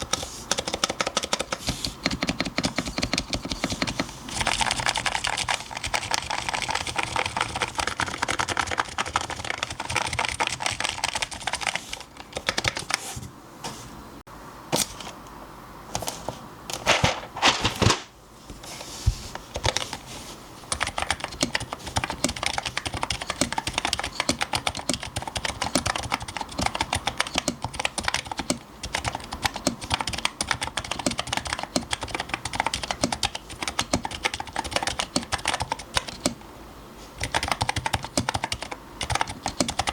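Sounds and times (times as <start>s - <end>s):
fast keyboard typing: 0.0s - 13.0s, 19.5s - 20.0s, 20.7s - 36.4s, 37.2s - 39.9s
loud keyboard clacks: 0.0s - 13.0s, 20.7s - 36.4s, 37.2s - 39.9s.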